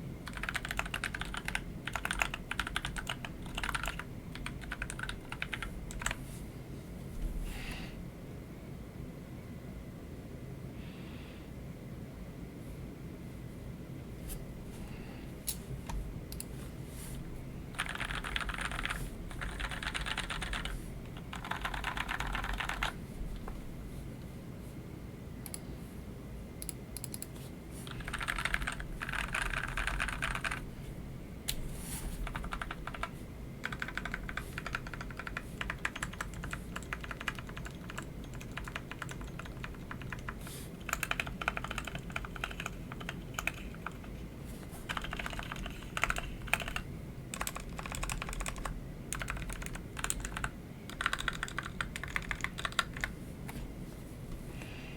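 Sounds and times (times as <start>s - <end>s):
mechanical keyboard typing: 0.2s - 6.2s, 17.8s - 23.0s, 27.9s - 30.6s, 32.2s - 44.1s, 44.9s - 53.1s.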